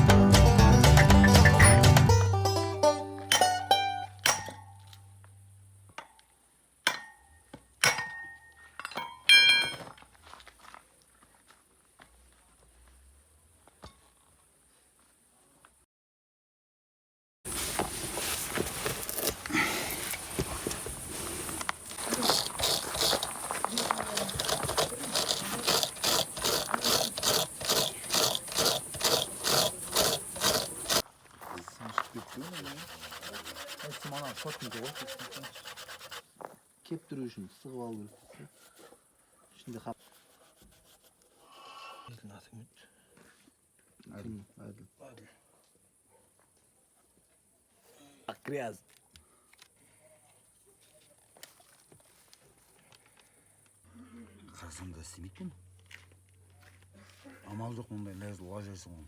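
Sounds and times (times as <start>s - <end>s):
metallic clinks and knocks: 6.8s - 10.0s
rasping on rubber tyre: 17.5s - 31.1s, 31.7s - 36.4s.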